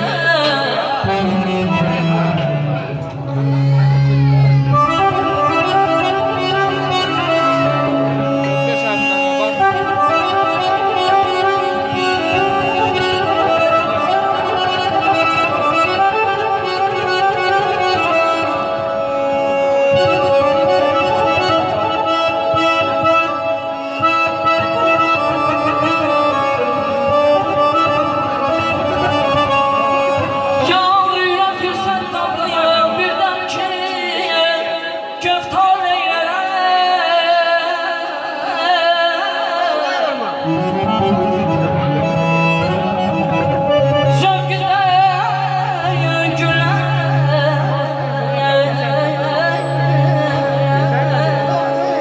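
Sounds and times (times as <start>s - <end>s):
held instrumental notes: 0.7s - 33.6s, 40.2s - 52.0s
person singing ornamented melody: 43.8s - 52.0s.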